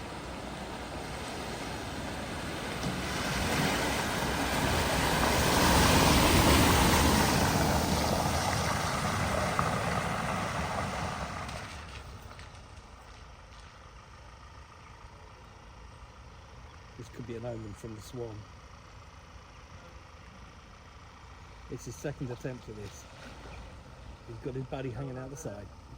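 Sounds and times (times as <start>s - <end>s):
vehicle driving through water: 0.0s - 12.5s, 21.8s - 25.9s.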